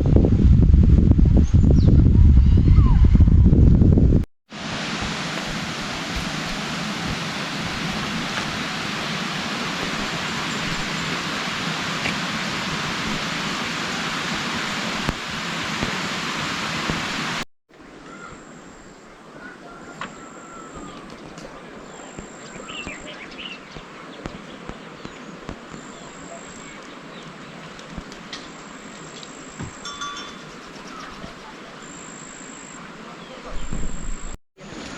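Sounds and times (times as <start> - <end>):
heavy rain hiss: 4.5 - 17.4
birds chirping: 18.0 - 34.3
high insect-like tones: 28.5 - 32.8.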